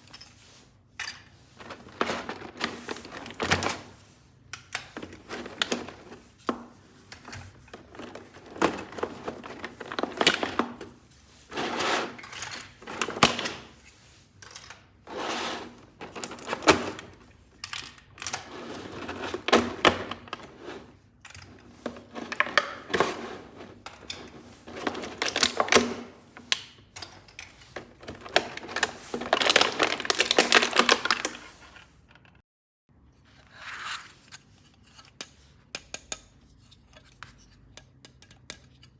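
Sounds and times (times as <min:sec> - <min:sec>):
packaging crackling rustle: 0:28.1 - 0:31.6.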